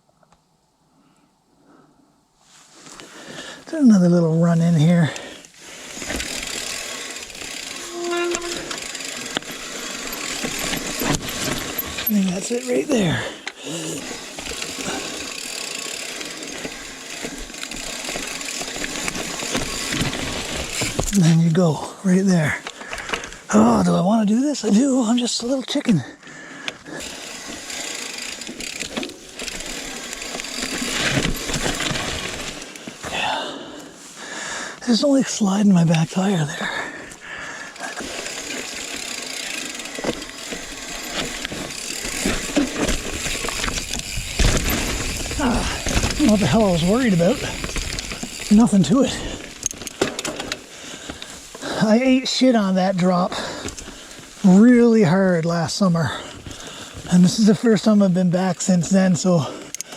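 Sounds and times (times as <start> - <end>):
bike tyres on dirt trail: 1.0 - 59.9
bike knocks and rattles: 5.9 - 13.4, 14.0 - 21.4, 27.0 - 33.1, 37.9 - 51.8.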